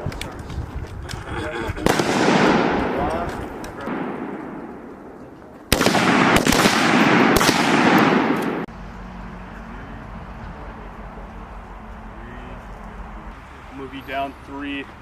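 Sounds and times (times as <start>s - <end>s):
rifle shots with echoes: 1.8s - 8.7s.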